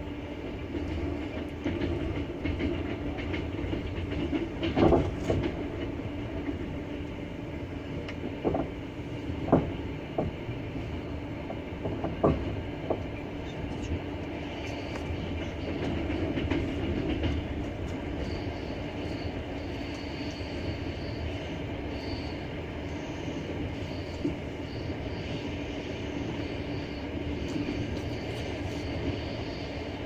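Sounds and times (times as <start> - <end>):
train wheels rumbling: 0.0 - 30.0
faint high squeal: 18.2 - 29.9.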